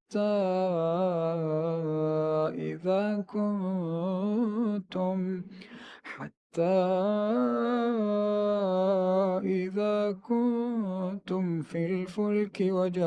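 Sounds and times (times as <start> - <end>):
intake of breath: 5.5 - 6.2.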